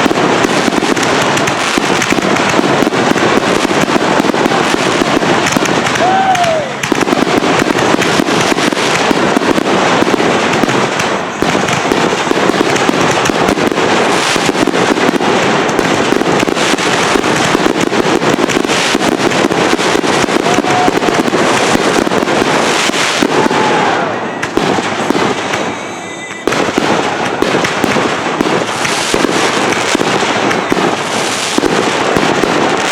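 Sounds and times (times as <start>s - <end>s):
firework whistles: 0.0s - 32.9s
fireworks crackling pops: 0.0s - 32.9s.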